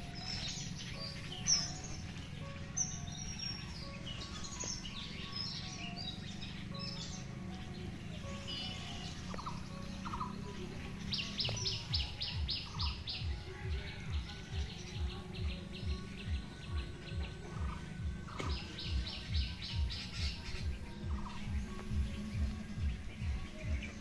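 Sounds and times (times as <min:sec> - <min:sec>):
songbird chirping: 0:00.0 - 0:24.0
low pulsing thumping: 0:09.2 - 0:24.0.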